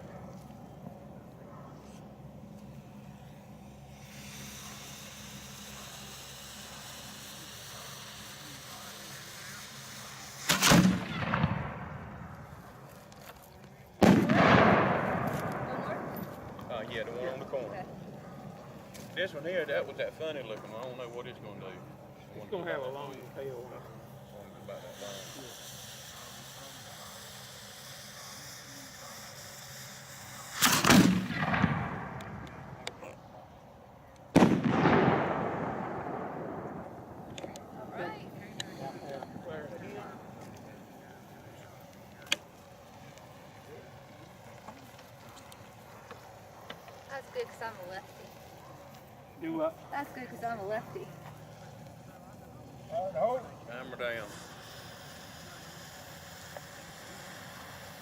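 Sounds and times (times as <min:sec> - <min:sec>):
burning fuse hissing: 0:02.0 - 0:33.2, 0:35.4 - 0:58.0
firework shell bursting: 0:04.0 - 0:13.4, 0:14.0 - 0:17.6, 0:24.7 - 0:33.0, 0:34.3 - 0:41.4
firework shell booms: 0:10.4 - 0:12.6, 0:14.0 - 0:17.2, 0:30.5 - 0:32.8, 0:34.3 - 0:37.3.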